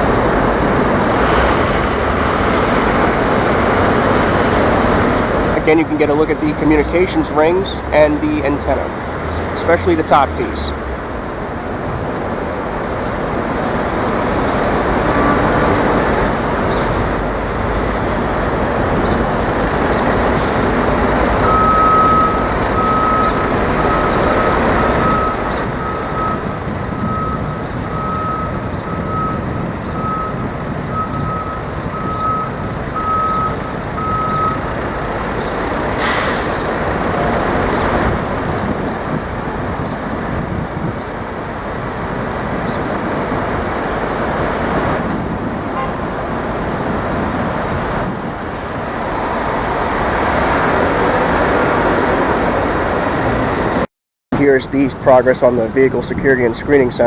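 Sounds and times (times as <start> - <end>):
city traffic: 0.0 - 57.0
heavy truck engine running: 0.0 - 57.0
reversing alarm beeping: 21.0 - 34.7
air brake hiss: 36.0 - 36.6.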